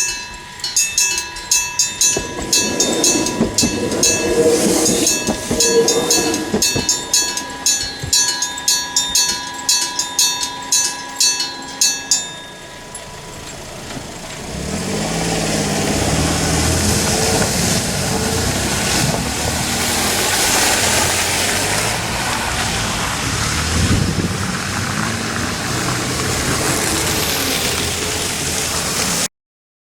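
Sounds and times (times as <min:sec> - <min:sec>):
electric bell ringing: 0:00.0 - 0:13.9
vehicle engine rumble: 0:00.0 - 0:29.3.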